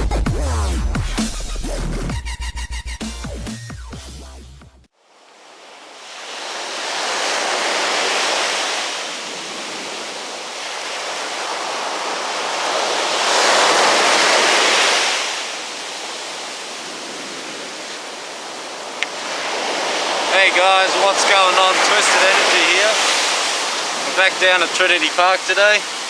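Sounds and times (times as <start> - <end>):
surf washing onto beach: 5.2 - 26.0.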